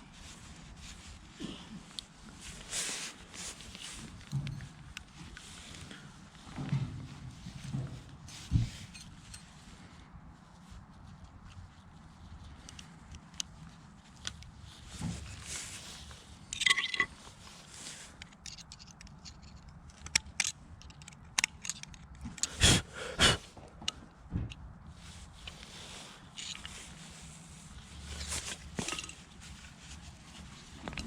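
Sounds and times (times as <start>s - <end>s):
hand tools clicking and scraping: 17.8s - 24.0s, 28.1s - 29.6s.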